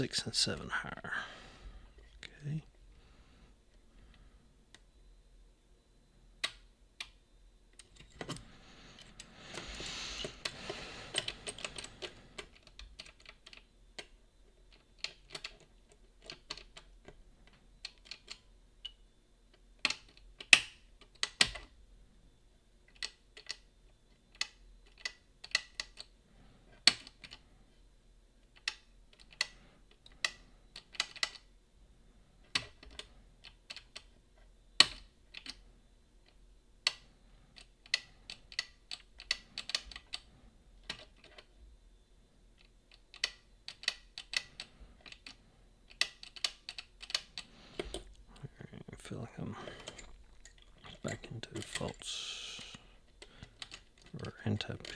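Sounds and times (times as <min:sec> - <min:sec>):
lock picks clicking in lock: 0:10.4 - 0:21.7, 0:24.3 - 0:26.1, 0:28.5 - 0:31.5, 0:34.8 - 0:35.6, 0:37.6 - 0:41.5, 0:42.6 - 0:48.2.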